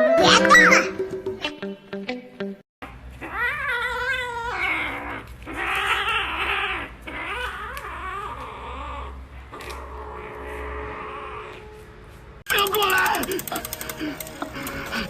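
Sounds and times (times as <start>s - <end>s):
cat yowling: 3.2s - 9.2s.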